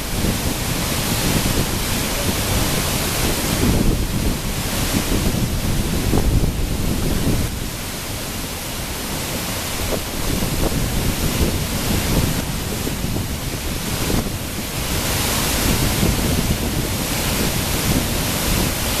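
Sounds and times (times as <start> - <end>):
waterfall rushing: 0.0 - 19.0
wind buffeting microphone: 0.0 - 19.0.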